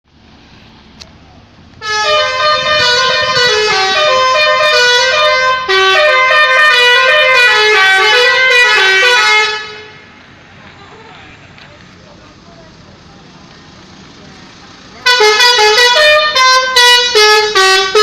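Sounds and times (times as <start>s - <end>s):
musical air horn playing tune: 1.8s - 10.1s, 15.0s - 18.0s.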